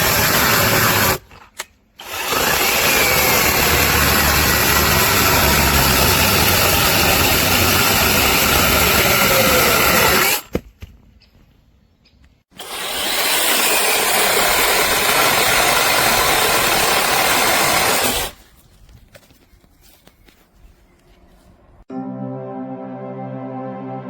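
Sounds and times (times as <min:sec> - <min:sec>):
cordless chainsaw running: 0:00.0 - 0:01.2, 0:02.0 - 0:10.4, 0:12.6 - 0:18.4.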